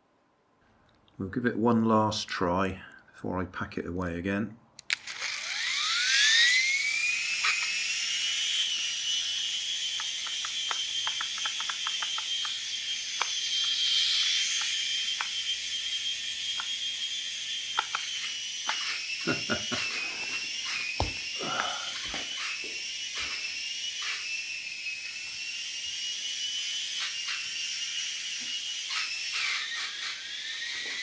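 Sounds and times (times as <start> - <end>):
toy motorbike motor whining: 4.8 - 31.0.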